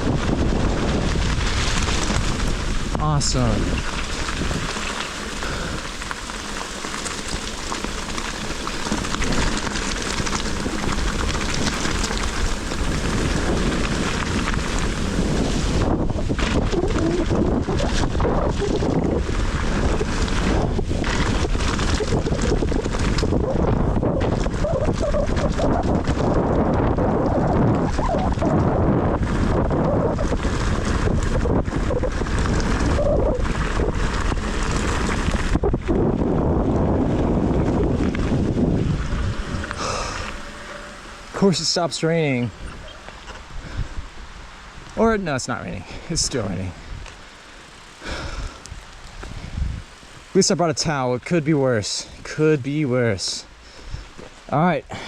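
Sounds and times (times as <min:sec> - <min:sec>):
bike rattling and knocking: 0:00.0 - 0:43.0
low rumble: 0:00.0 - 0:50.0
pouring rain: 0:00.0 - 0:55.0
raindrops hitting close by: 0:00.0 - 0:55.0
wind buffeting microphone: 0:00.0 - 0:55.0.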